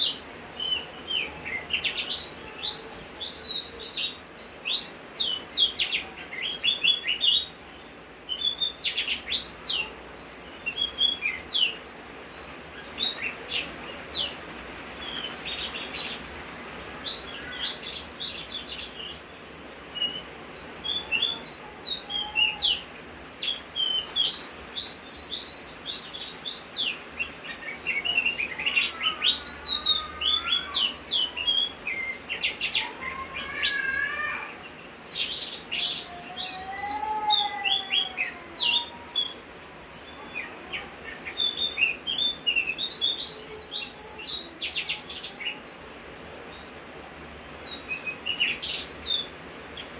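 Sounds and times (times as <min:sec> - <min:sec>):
bird chirping and trilling: 0:00.0 - 0:49.9
steady hiss: 0:00.0 - 0:49.9.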